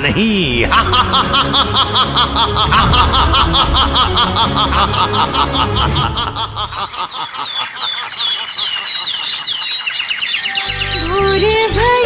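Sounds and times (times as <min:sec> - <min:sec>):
man laughing: 0:00.0 - 0:09.8
low music drone: 0:00.7 - 0:06.7.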